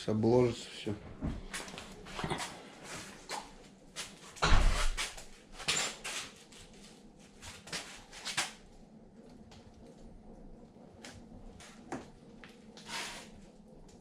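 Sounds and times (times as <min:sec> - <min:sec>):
heavy thump: 0:04.4 - 0:05.0.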